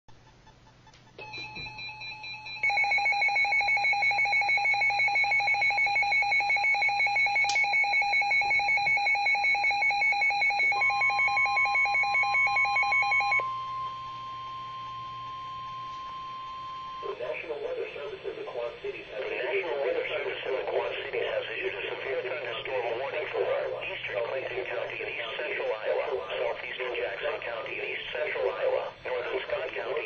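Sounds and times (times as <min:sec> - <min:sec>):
electronic alarm trilling beeps: 0:01.2 - 0:17.2
steady single-pitch alarm tone: 0:01.2 - 0:19.2.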